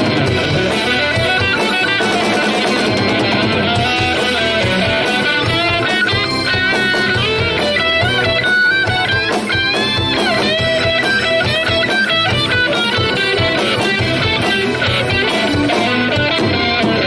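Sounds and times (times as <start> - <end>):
lead electric guitar melody: 0.0 - 17.0
steady drum beat: 0.0 - 17.0
strummed guitar chords: 0.0 - 17.0.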